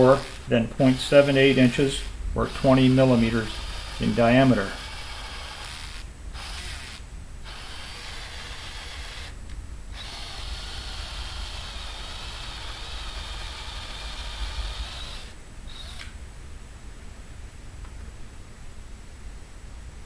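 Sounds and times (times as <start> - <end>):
drill drilling into metal: 0.0 - 9.4, 10.0 - 16.1.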